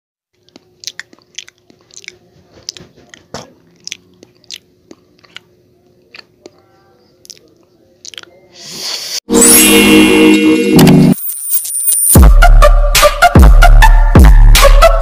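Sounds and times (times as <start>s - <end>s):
biting and chewing pizza: 0.3s - 8.4s
wet mouth clicks: 0.4s - 5.5s, 7.2s - 8.3s.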